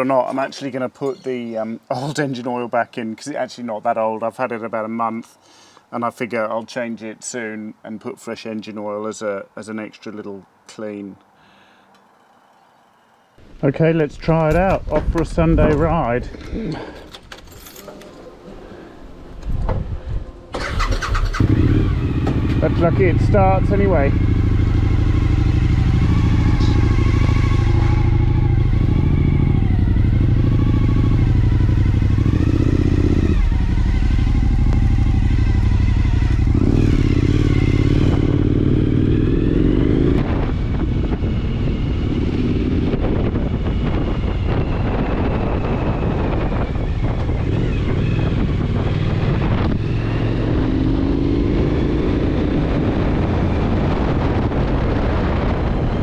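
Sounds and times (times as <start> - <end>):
motorcycle engine revving: 20.5 - 56.0.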